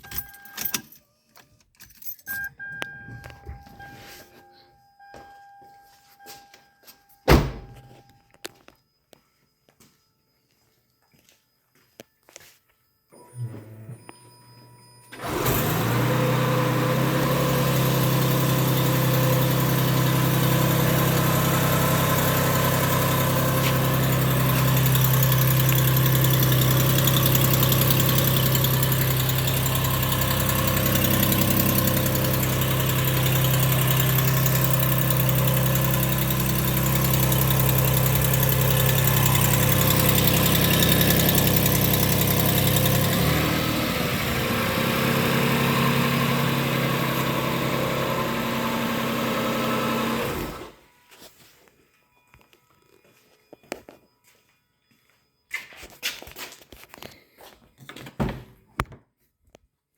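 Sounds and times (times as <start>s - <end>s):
car engine starting and running: 1.9s - 4.4s, 15.1s - 50.8s.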